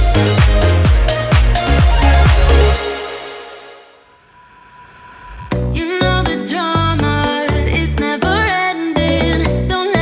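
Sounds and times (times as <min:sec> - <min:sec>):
song with heavy bass beat: 0:00.0 - 0:03.6, 0:05.2 - 0:10.0
gliding synth melody: 0:00.0 - 0:04.1.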